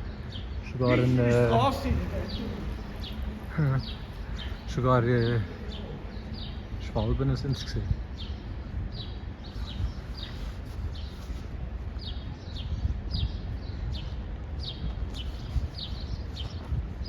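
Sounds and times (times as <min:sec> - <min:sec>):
songbird calling: 0:00.0 - 0:06.7
steady low rumble: 0:00.0 - 0:17.0.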